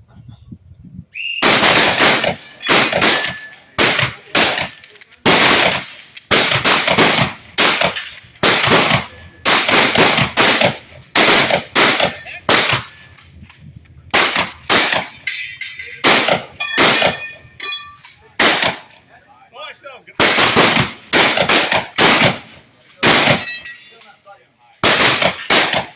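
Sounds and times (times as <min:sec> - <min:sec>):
shotgun shots echoing: 0:01.4 - 0:13.0, 0:14.1 - 0:15.3, 0:16.0 - 0:17.4, 0:18.4 - 0:18.9, 0:20.2 - 0:23.7, 0:24.8 - 0:25.9.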